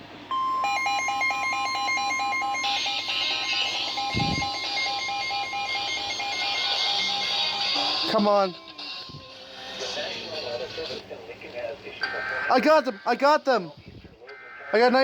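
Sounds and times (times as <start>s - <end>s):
fast pulsing electronic beep: 0.3s - 7.9s
high warning tone: 0.3s - 9.3s
radio hiss: 9.8s - 15.0s.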